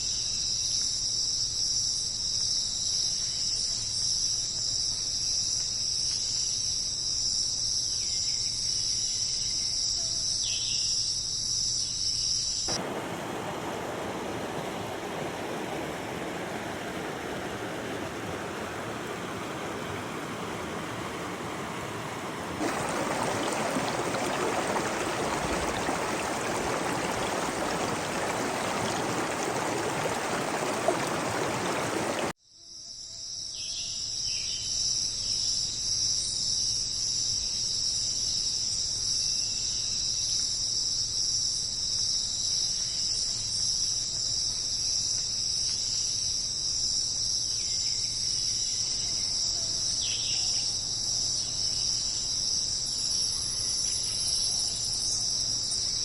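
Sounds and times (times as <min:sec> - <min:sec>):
steady rushing noise: 0:12.8 - 0:32.3
insect chorus chirring: 0:22.6 - 0:32.3.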